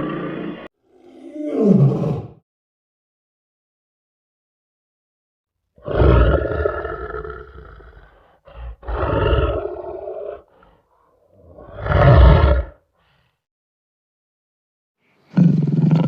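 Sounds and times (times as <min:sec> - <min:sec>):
deep monster roars: 0:00.0 - 0:02.4, 0:05.8 - 0:10.5, 0:11.4 - 0:12.8.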